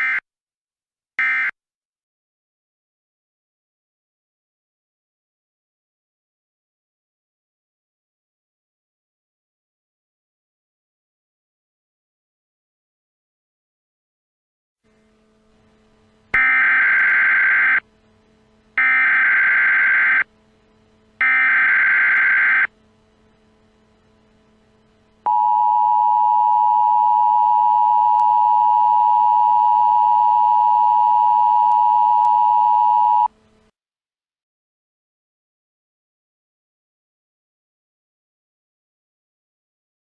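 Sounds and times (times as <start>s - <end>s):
steady dual-tone attention signal: 0.0s - 0.2s, 1.2s - 1.6s, 16.3s - 17.9s, 18.8s - 20.4s, 21.2s - 22.8s, 25.2s - 33.3s.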